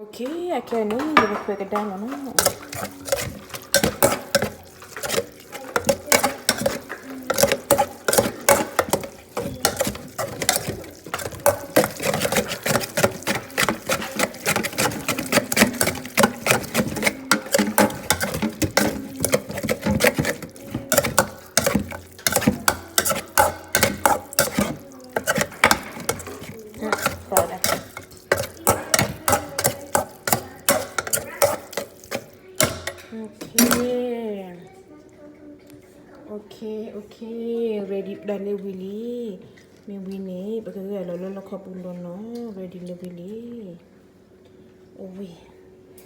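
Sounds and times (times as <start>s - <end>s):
cutlery and dishes clinking: 0.8s - 34.0s.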